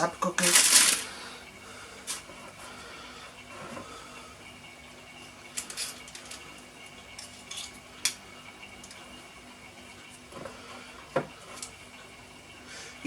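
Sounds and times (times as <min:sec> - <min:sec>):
faint steady hum: 0:00.0 - 0:13.0
utensils and dishes clinking: 0:07.2 - 0:07.8.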